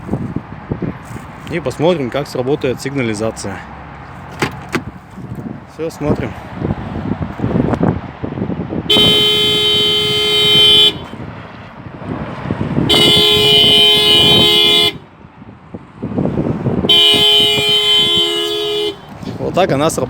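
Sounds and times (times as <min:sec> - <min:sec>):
car alarm horn blasts: 0:08.9 - 0:11.2, 0:12.9 - 0:15.0, 0:16.8 - 0:19.1.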